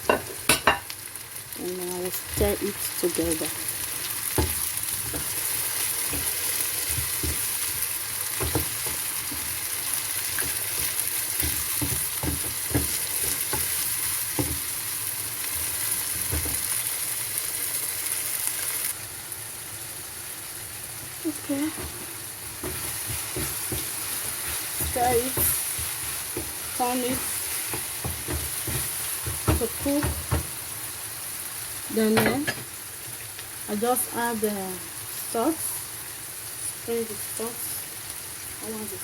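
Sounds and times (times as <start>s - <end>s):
vegetables sizzling in oil: 0.0s - 39.0s
spoon knocking against pan: 10.4s - 13.7s, 22.6s - 30.5s.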